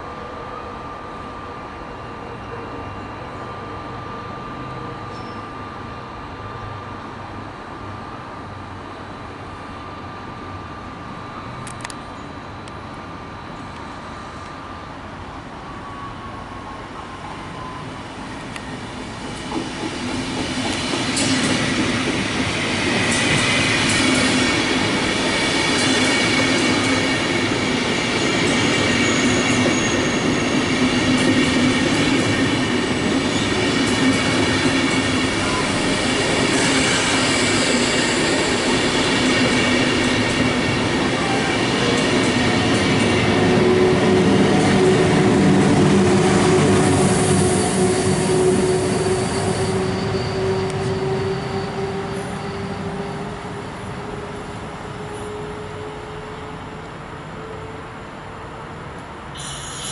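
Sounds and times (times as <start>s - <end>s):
train passing on tracks: 0.0s - 59.9s.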